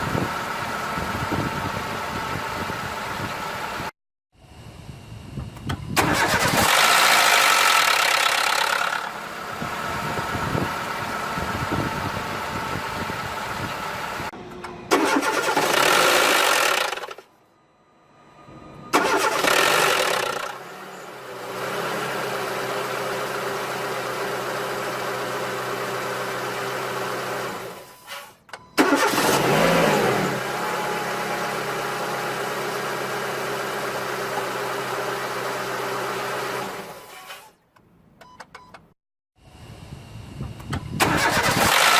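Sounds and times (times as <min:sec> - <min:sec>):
car engine starting with odd noise: 0:05.4 - 0:17.3, 0:18.1 - 0:27.8, 0:28.8 - 0:37.4, 0:40.4 - 0:41.9.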